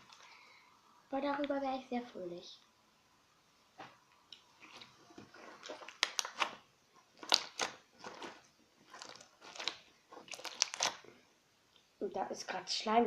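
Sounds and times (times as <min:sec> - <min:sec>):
slime popping and crackling: 0:04.4 - 0:11.2.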